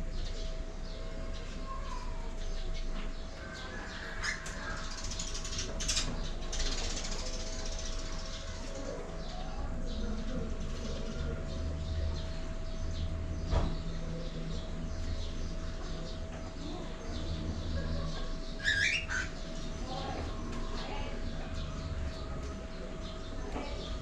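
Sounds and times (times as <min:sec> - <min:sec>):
steady background hum: 0:00.0 - 0:24.0
cockatiels chirping: 0:18.6 - 0:19.4.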